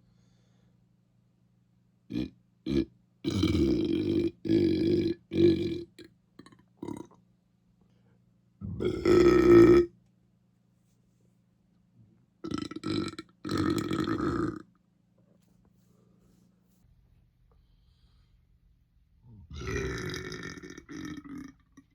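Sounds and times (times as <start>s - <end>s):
person belching: 2.1s - 7.2s, 8.6s - 9.9s, 12.4s - 14.6s, 19.5s - 21.9s.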